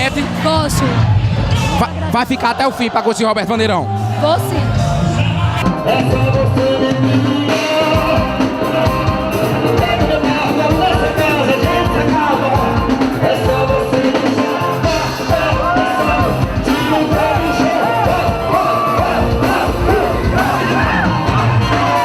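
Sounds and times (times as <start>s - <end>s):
live folk band music: 4.9s - 22.0s
person singing: 5.6s - 22.0s.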